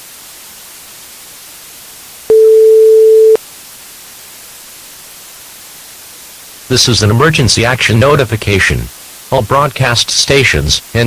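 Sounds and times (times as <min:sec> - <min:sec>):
background hiss: 0:00.0 - 0:11.0
electronic beep tone: 0:02.3 - 0:03.4.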